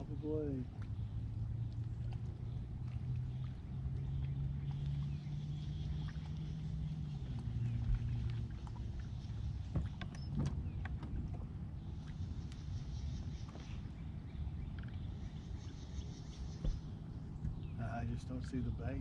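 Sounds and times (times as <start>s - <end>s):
boat motor humming: 0.0s - 19.0s.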